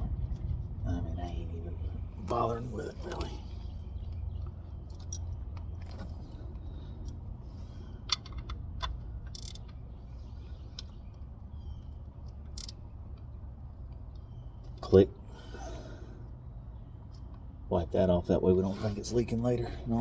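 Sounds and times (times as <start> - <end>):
low rumble: 0.0 - 11.8.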